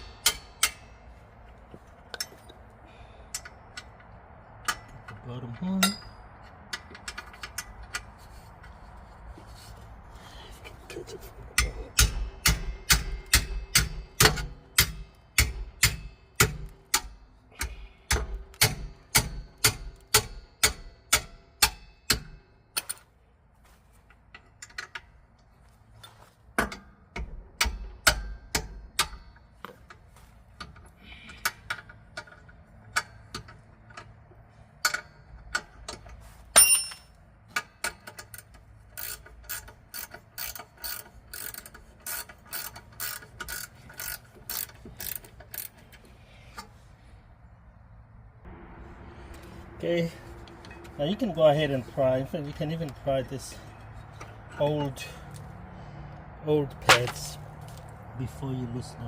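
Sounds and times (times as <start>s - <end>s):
hand ratchet clicking: 0.1s - 0.9s, 11.6s - 22.9s, 37.6s - 46.7s.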